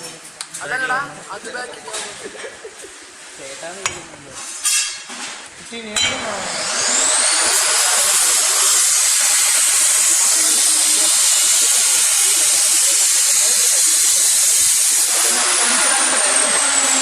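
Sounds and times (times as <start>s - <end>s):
small electric motor whining: 6.4s - 17.0s.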